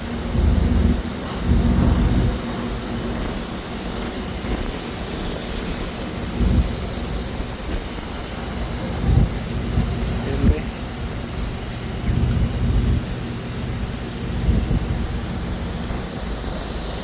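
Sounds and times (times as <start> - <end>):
steady hiss: 0.0 - 17.0
wind rumbling on microphone: 0.1 - 3.4, 8.6 - 16.4.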